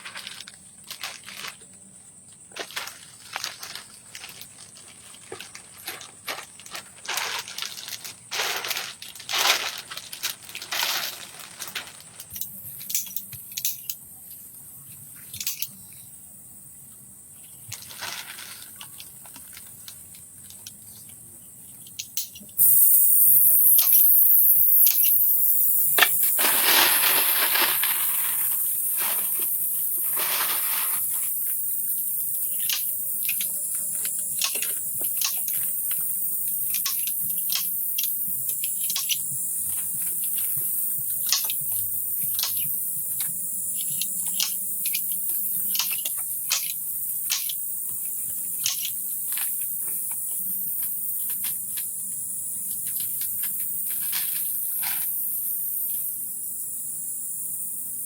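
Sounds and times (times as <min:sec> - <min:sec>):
high-pitched insect chorus: 0:00.0 - 0:58.0.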